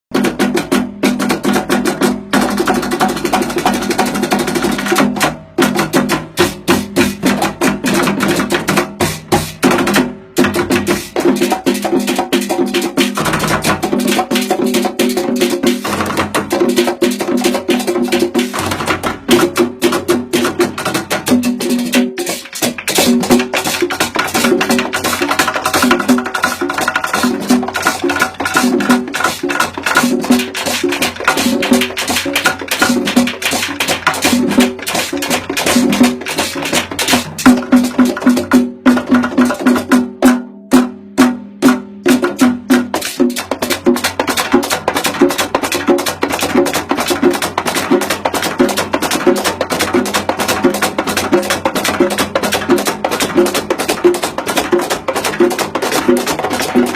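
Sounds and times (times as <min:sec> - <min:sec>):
drum strokes: 0:00.1 - 0:56.9
music with wood-block percussion: 0:00.1 - 0:56.9.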